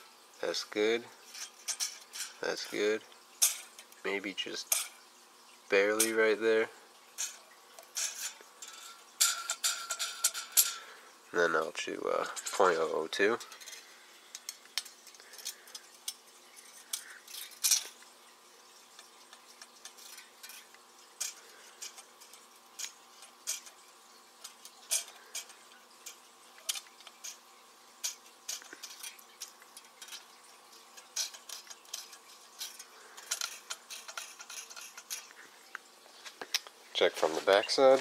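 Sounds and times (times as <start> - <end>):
faint steady hum: 0.0 - 38.0
metal clicks and scrapes: 1.2 - 4.0, 7.2 - 10.9, 18.7 - 35.5.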